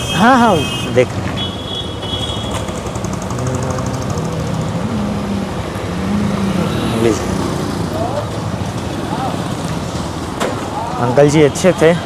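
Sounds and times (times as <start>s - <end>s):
street traffic noise: 0.0s - 12.0s.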